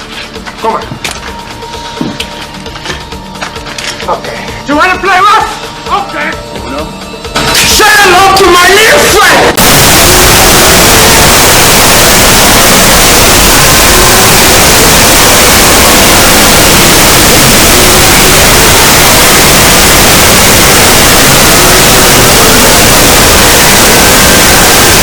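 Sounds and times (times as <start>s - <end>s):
loud distorted static noise: 7.4s - 25.0s.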